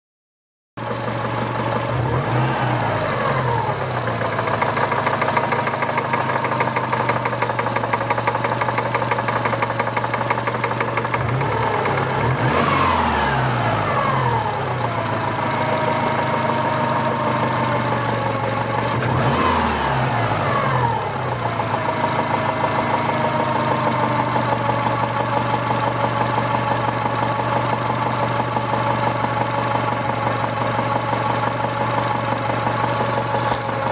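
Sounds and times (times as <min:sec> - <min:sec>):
engine revving: 0:01.6 - 0:07.5, 0:10.9 - 0:25.6
engine idling with knock: 0:03.9 - 0:12.6, 0:21.3 - 0:33.9.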